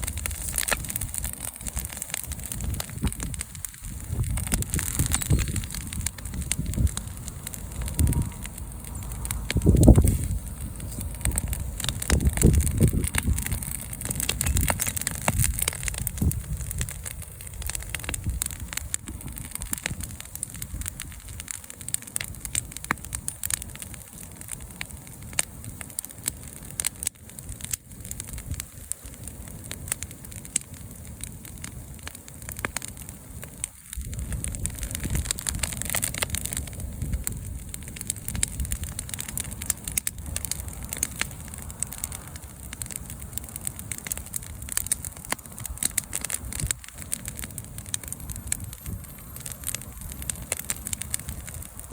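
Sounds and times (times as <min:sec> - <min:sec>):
bonfire crackling and popping: 0:00.0 - 0:51.9
low rumble: 0:02.5 - 0:19.5.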